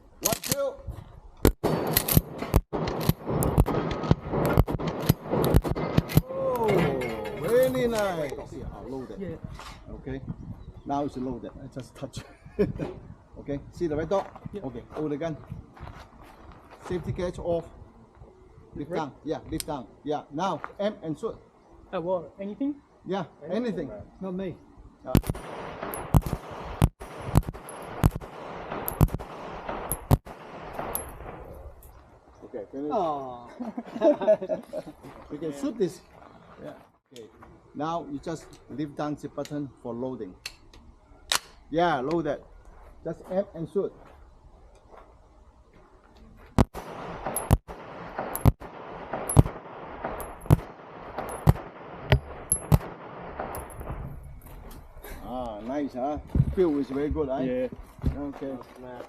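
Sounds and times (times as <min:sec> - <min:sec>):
gunshots with ringing echo: 0:01.6 - 0:06.2, 0:25.2 - 0:31.7, 0:46.6 - 0:54.0.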